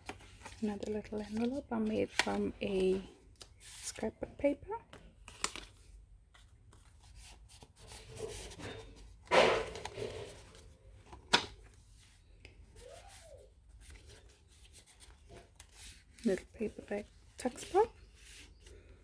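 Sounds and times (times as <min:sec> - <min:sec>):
page turning: 0:00.0 - 0:02.4, 0:05.2 - 0:11.8
paper rustling: 0:00.0 - 0:04.0, 0:05.2 - 0:19.0.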